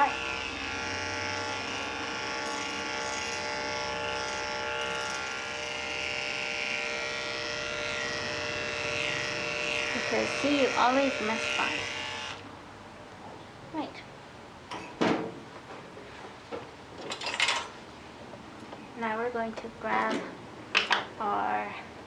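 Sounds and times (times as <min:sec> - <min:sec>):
electric clipper humming: 0:00.0 - 0:12.5.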